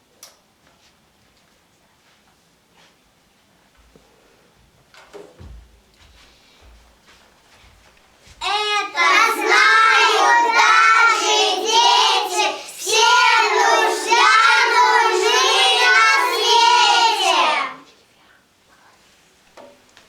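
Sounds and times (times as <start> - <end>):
children singing unaccompanied: 8.4 - 17.9.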